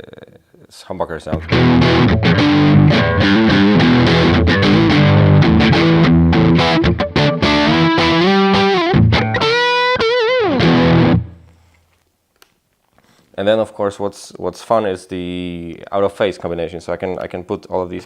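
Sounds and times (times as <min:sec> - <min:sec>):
distorted electric guitar: 0:01.4 - 0:11.5.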